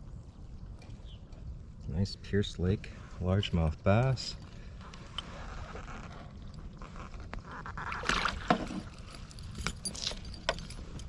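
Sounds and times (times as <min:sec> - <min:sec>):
clicks and knocks in a kayak: 0:04.8 - 0:11.0.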